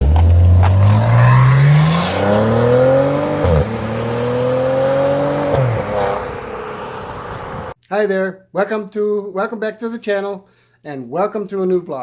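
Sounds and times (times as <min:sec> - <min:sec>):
car engine accelerating through gears: 0:00.0 - 0:07.8.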